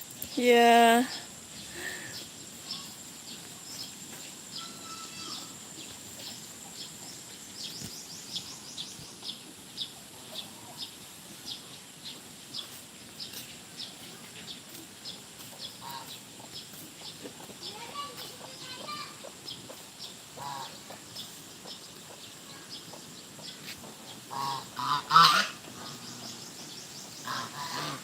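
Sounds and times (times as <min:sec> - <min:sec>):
faint high hiss: 0:00.0 - 0:15.7.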